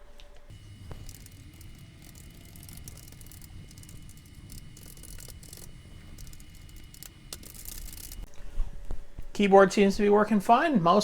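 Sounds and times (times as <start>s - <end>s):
computer humming: 0.5s - 8.3s.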